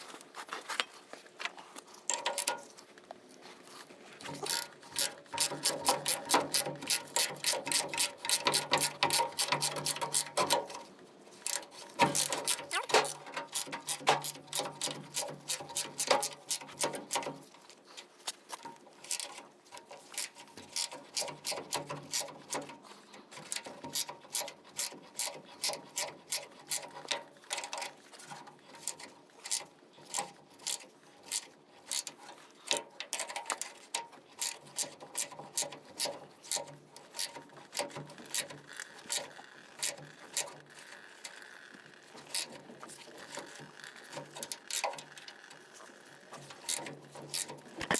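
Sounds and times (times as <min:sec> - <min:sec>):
ratchet wrench clicking: 0:04.3 - 0:10.8, 0:11.4 - 0:17.3, 0:20.1 - 0:22.6.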